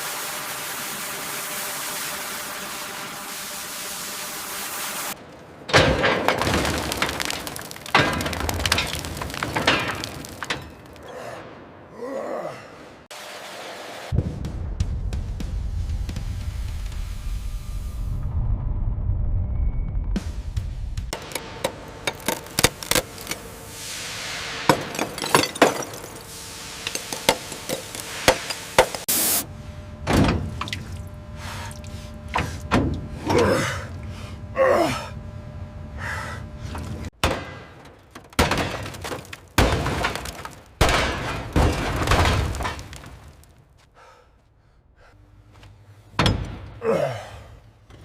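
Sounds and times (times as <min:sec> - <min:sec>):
sharp knocks and cracks: 0:05.7 - 0:11.1, 0:21.1 - 0:23.4, 0:37.2 - 0:43.6.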